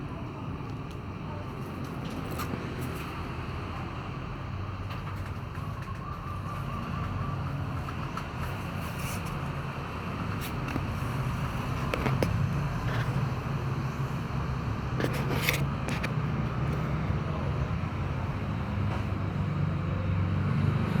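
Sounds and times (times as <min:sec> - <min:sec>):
faint short clicks and scrapes: 0:10.3 - 0:13.4, 0:14.9 - 0:16.8.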